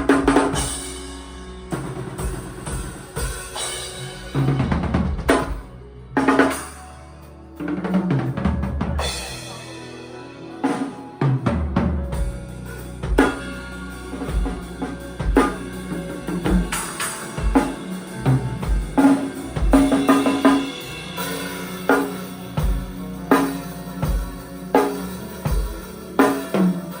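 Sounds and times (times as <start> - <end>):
drum kit playing a beat: 0.0 - 6.8, 7.6 - 27.0
band instruments: 7.6 - 27.0.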